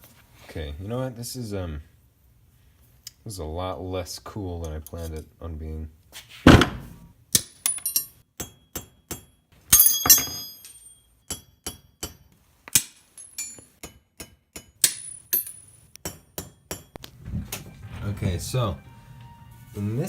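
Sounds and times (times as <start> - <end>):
metal parts tapping and clinking: 7.4 - 8.2, 9.7 - 11.1, 12.7 - 13.8, 14.8 - 16.0.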